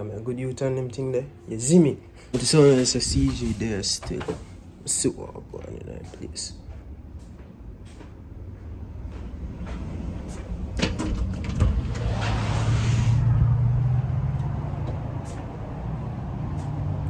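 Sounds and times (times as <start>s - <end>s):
vehicle engine humming: 6.2s - 17.0s.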